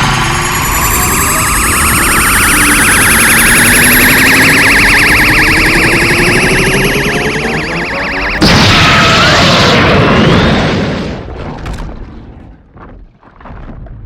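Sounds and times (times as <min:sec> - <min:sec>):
electronic energy beam whine: 0:00.0 - 0:09.4.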